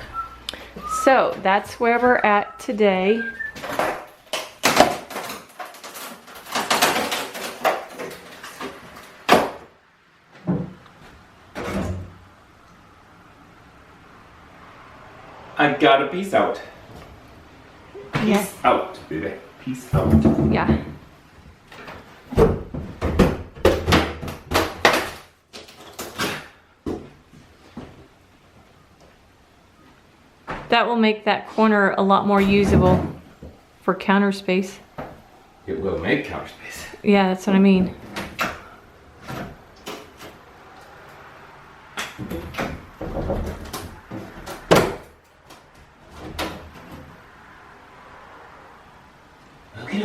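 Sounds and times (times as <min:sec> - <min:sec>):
knocks and bangs of prying: 0:03.6 - 0:09.7, 0:19.9 - 0:21.0, 0:21.7 - 0:27.2, 0:42.0 - 0:47.1.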